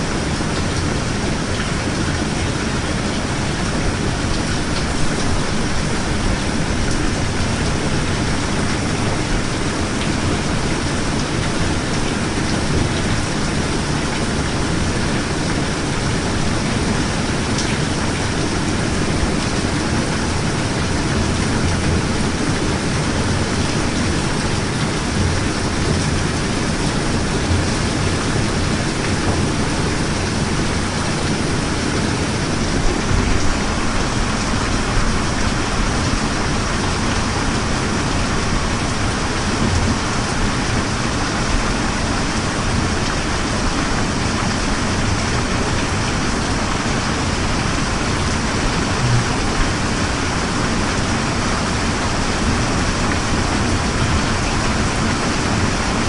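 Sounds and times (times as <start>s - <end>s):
heavy rain hissing: 0.0s - 56.0s
low rumble: 48.7s - 50.5s.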